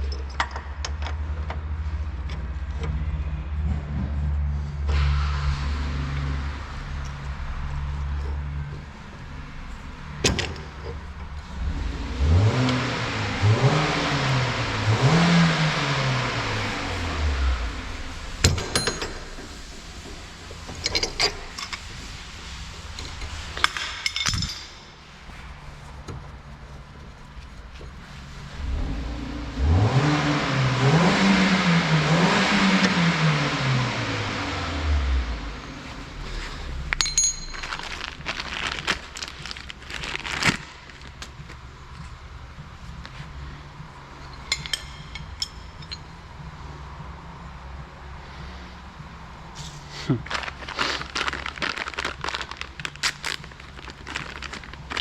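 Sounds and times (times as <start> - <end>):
engine revving: 2.6 - 23.7, 28.2 - 37.0
metal tools clinking: 18.4 - 22.1, 23.0 - 25.0, 36.9 - 39.4, 44.2 - 46.4.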